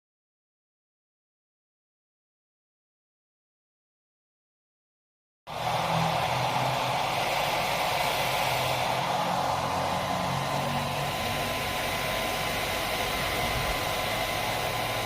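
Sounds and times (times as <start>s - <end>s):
hair dryer running: 5.5s - 15.0s.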